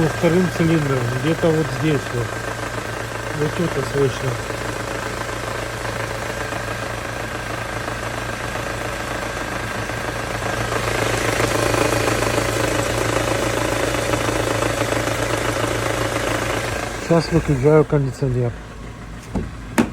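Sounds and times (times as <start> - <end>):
car engine idling with a knock: 18.6 - 19.9.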